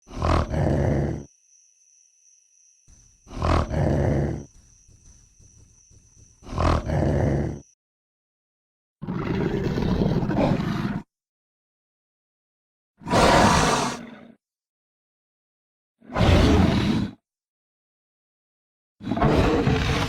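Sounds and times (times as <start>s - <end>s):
deep dinosaur roars: 0.0s - 1.3s, 3.3s - 4.5s, 6.4s - 7.7s, 9.0s - 11.0s, 13.0s - 14.4s, 19.0s - 20.0s.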